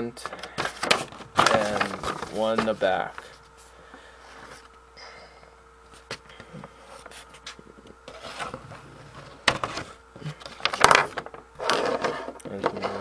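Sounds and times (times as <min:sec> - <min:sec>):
objects rubbing and scraping: 0:00.2 - 0:04.7, 0:05.9 - 0:13.0.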